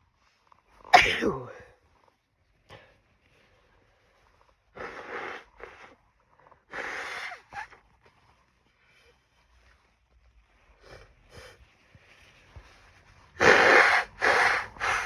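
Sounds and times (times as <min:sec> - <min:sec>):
person blowing nose: 0:04.8 - 0:05.9, 0:06.7 - 0:07.8, 0:13.4 - 0:15.0.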